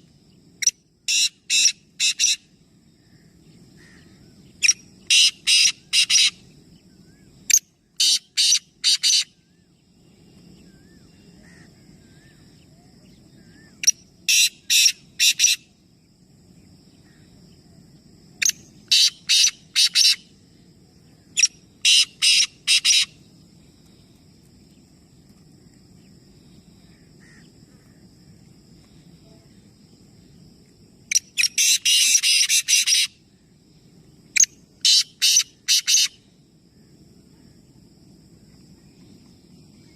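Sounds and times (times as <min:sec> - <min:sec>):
birds calling sharp notes: 0:03.8 - 0:06.5, 0:18.4 - 0:20.2, 0:21.4 - 0:23.1.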